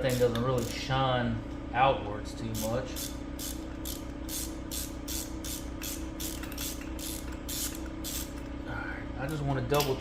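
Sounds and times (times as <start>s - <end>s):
steady low hum: 0.0s - 10.0s
ratchet pawl rasping: 2.6s - 8.3s.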